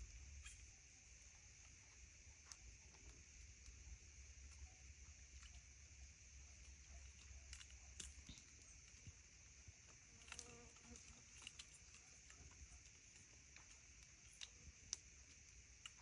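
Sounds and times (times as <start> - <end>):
faint clicks: 6.6 - 16.0.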